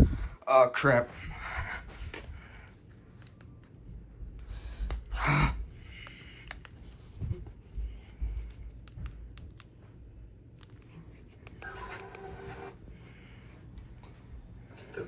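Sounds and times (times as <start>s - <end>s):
low rumble: 0.0s - 0.4s.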